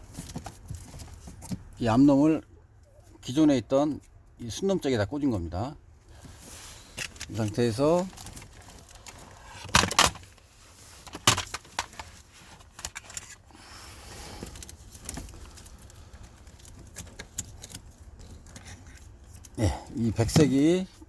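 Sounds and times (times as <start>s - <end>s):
hands handling plastic connectors: 6.2s - 13.6s, 14.2s - 21.0s.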